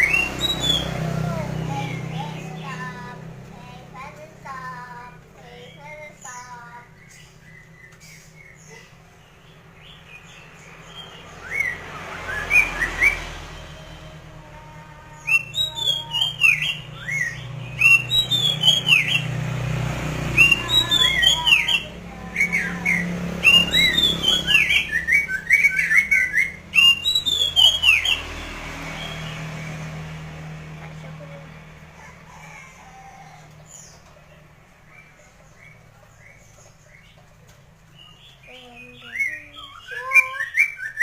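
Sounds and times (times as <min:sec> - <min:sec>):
bird singing whistled notes: 0:00.0 - 0:01.0, 0:15.2 - 0:19.3, 0:20.4 - 0:28.3.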